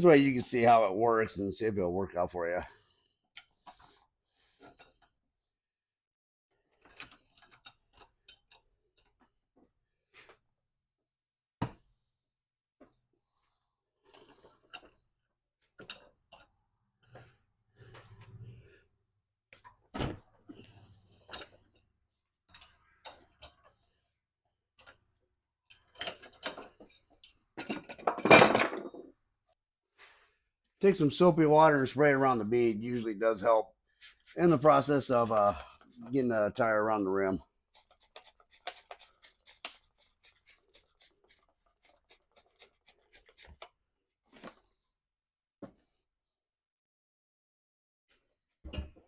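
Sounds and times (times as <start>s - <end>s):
tools clicking and knocking: 6.7s - 9.3s, 25.7s - 28.8s
spray bottle squirting: 37.7s - 43.6s.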